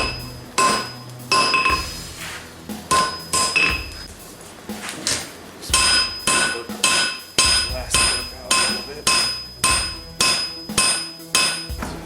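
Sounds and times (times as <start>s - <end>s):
hammer striking hot steel: 0.0s - 12.0s
anvil ringing: 2.8s - 4.1s, 5.7s - 12.0s.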